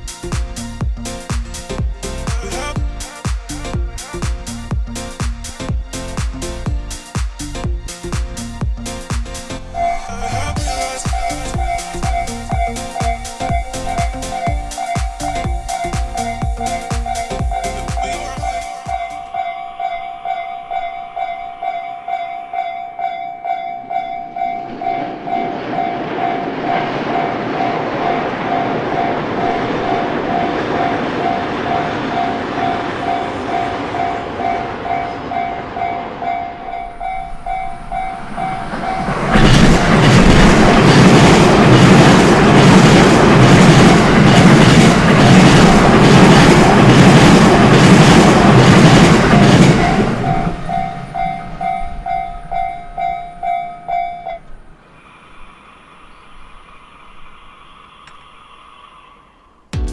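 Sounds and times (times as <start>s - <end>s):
crossing alarm bell dinging: 9.8s - 26.5s, 28.5s - 54.8s
train wheels clattering over rail joints: 38.6s - 52.0s.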